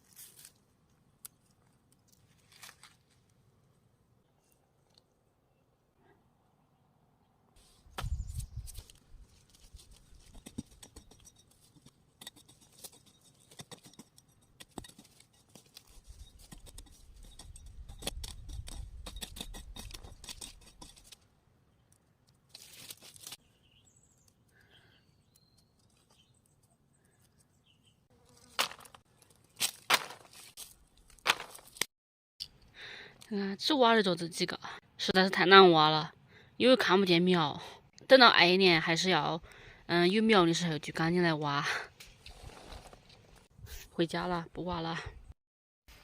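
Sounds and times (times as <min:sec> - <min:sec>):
dry vegetation rustling: 0:00.0 - 0:03.4, 0:07.6 - 0:10.8, 0:22.4 - 0:23.5, 0:25.8 - 0:31.9
digging tool scraping soil: 0:07.6 - 0:21.2, 0:42.0 - 0:43.9.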